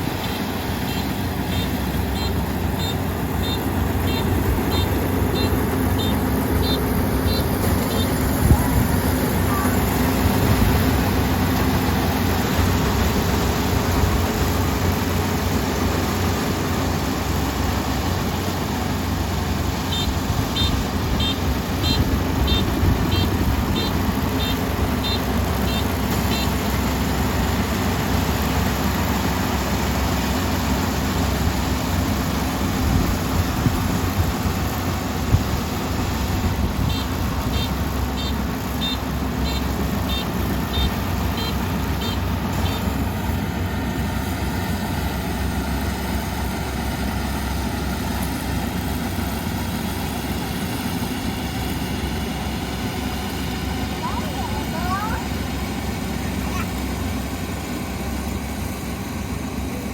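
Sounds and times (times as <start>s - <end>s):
combine harvester engine running: 0.0s - 59.9s
high warning beeps: 0.2s - 9.9s.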